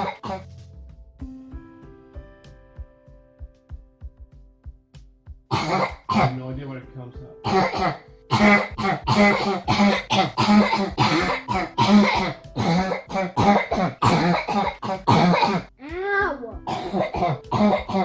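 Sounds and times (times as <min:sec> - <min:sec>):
person coughing harshly: 0:00.0 - 0:00.5, 0:05.5 - 0:06.4, 0:07.4 - 0:15.7, 0:16.7 - 0:18.0.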